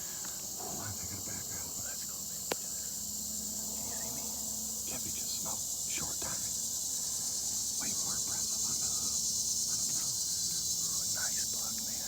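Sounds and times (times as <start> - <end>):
high-pitched insect chorus: 0.0 - 12.0
faint low whispering: 0.5 - 3.0, 3.6 - 6.5, 7.8 - 12.0.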